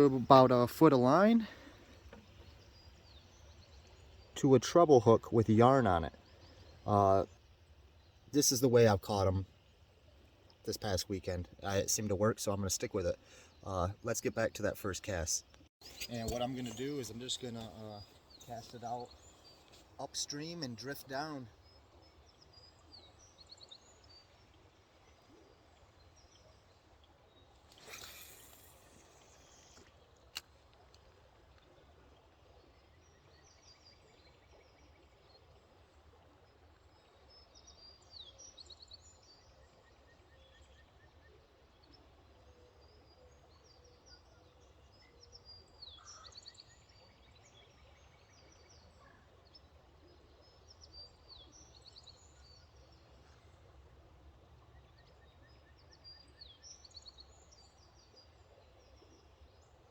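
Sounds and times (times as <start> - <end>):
birds chirping: 0.0 - 30.2.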